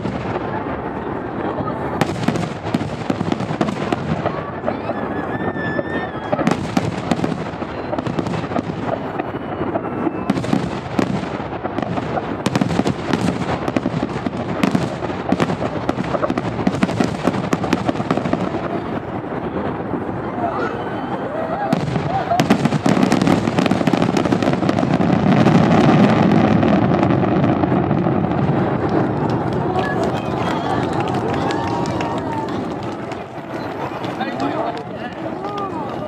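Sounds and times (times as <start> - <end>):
fireworks bursting and crackling: 0.0 - 36.0.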